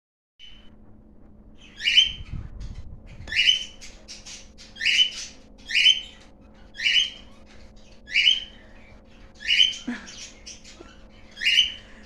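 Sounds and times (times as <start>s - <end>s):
bird squawking: 3.3s - 12.0s.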